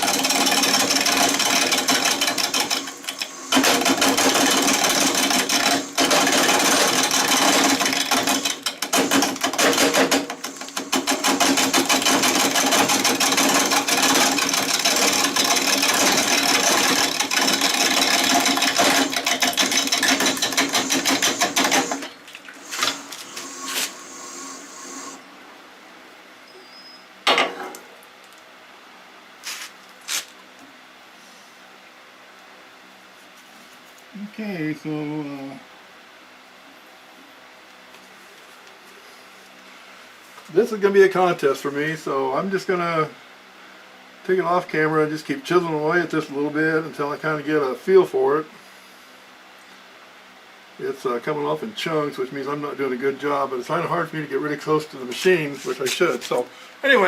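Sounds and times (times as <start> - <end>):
lathe tool scraping wood: 0.0 - 25.2
lathe motor hum: 0.0 - 25.3.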